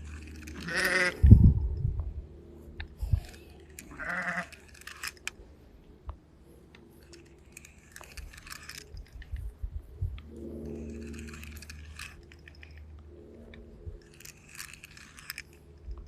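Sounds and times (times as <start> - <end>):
goat or sheep bleat: 0.6 - 1.2, 3.9 - 4.6.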